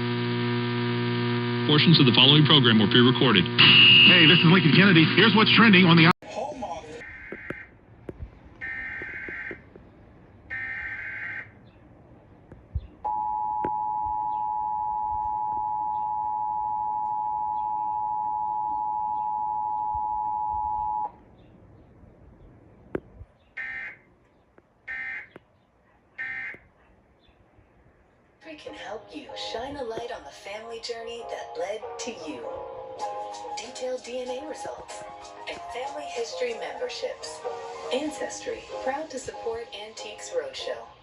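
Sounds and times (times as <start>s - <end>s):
two-tone attention signal: 3.6s - 4.8s, 13.1s - 21.1s.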